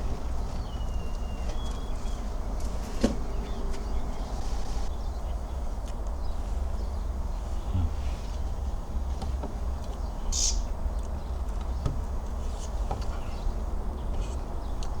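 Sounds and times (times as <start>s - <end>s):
bird chirps: 0.0s - 2.4s, 10.0s - 10.7s
sharp high bird chirp: 10.2s - 10.7s.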